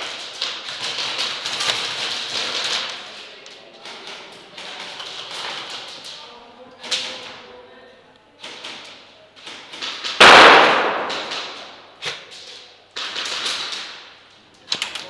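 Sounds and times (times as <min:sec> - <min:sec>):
airsoft guns shooting: 0:09.7 - 0:11.9.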